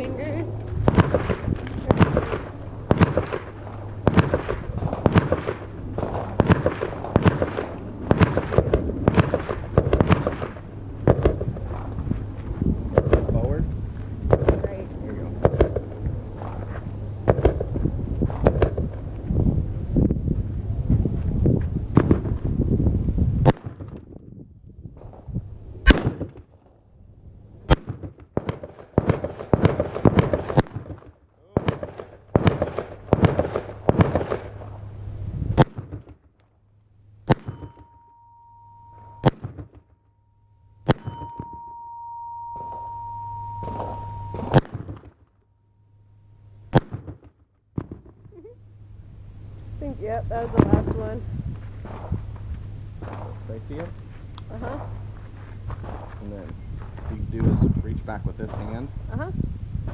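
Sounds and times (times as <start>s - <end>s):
wind rushing on microphone: 0.0s - 28.0s, 32.4s - 35.9s, 49.6s - 59.9s
rifle gunshots: 0.8s - 11.9s, 14.3s - 14.7s, 15.4s - 15.9s, 17.2s - 18.9s, 25.8s - 26.5s, 27.7s - 34.8s, 35.6s - 36.2s, 37.2s - 37.8s, 39.2s - 39.8s, 40.8s - 41.5s, 43.6s - 45.2s, 46.7s - 48.1s, 53.0s - 53.6s, 55.8s - 56.2s.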